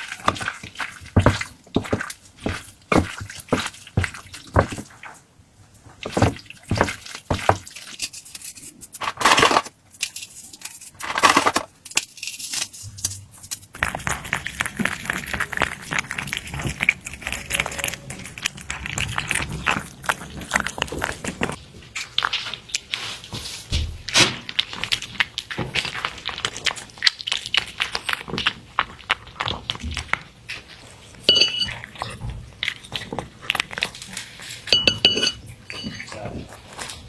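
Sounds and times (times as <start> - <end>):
food knocks and wet squishes: 0.0 - 5.2, 5.8 - 8.1
continuous crackling squish: 0.0 - 34.8, 35.4 - 37.0.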